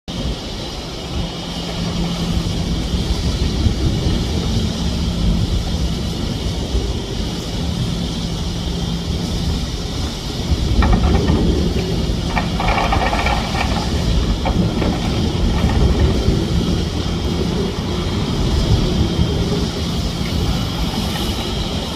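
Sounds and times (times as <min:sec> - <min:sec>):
excavator diesel engines humming: 0:00.1 - 0:21.9
rubble clattering in bucket: 0:10.8 - 0:16.5.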